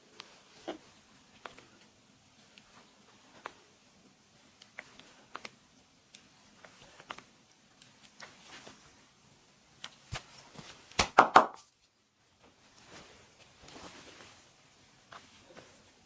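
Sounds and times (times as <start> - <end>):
loud smacks on body: 10.9 - 11.6.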